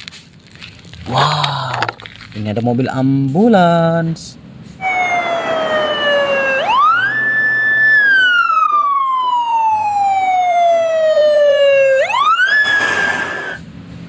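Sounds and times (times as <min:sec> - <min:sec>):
ambulance siren wailing: 0:04.8 - 0:13.6.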